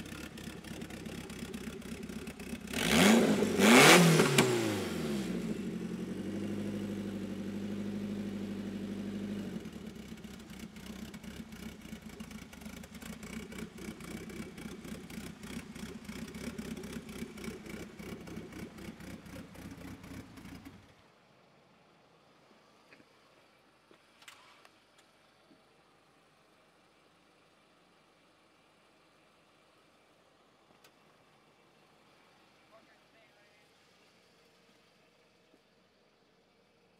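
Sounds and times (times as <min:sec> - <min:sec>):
car engine revving and idling: 0:00.0 - 0:21.1.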